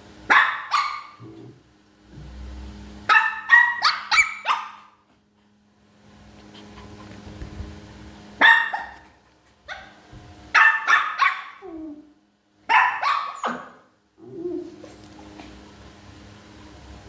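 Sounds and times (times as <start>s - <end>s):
small dogs barking: 0.2s - 1.5s, 3.0s - 5.0s, 8.4s - 14.0s
dog whining: 11.3s - 12.2s, 13.3s - 15.5s.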